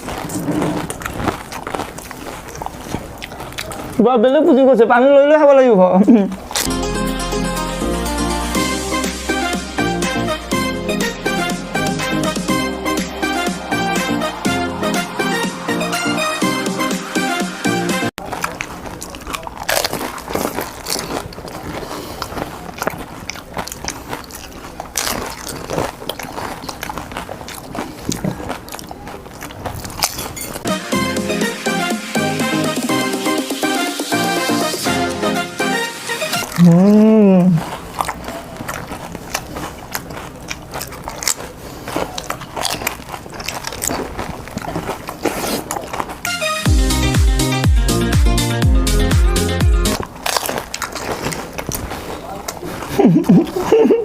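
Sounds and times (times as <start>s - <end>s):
crunching and chewing crisp shells: 0.0s - 4.7s, 6.4s - 6.8s, 18.2s - 30.7s, 37.5s - 46.6s, 49.9s - 54.0s.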